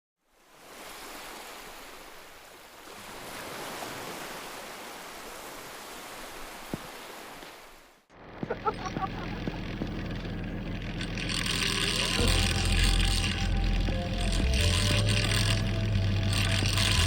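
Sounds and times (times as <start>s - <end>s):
sea waves rushing: 0.4s - 8.1s.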